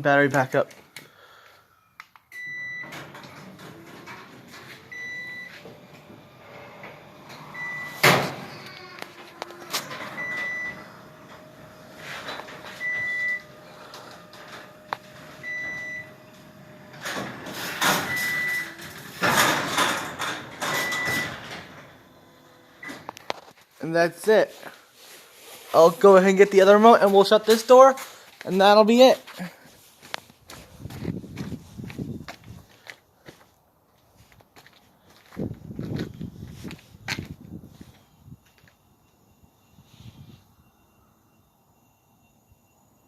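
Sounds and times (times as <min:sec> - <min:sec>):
garage door opener humming: 0:02.4 - 0:23.2
garage door clattering: 0:02.8 - 0:04.9, 0:05.9 - 0:15.4, 0:16.4 - 0:23.2.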